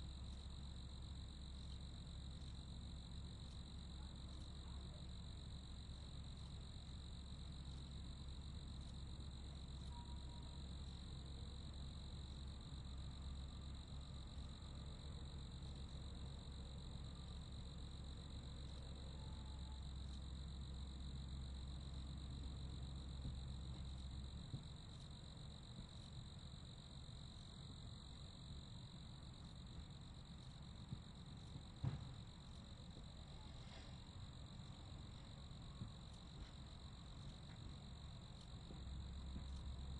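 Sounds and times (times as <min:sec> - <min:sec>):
crickets chirping: 0:00.0 - 0:39.9
faint knock: 0:31.8 - 0:32.2.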